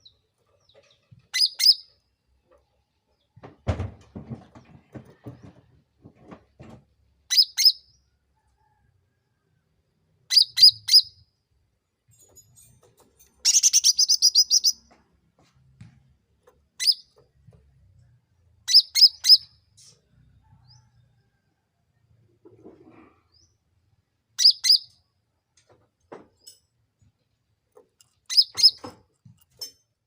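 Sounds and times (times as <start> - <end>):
bulbul calling: 13.4 - 14.8.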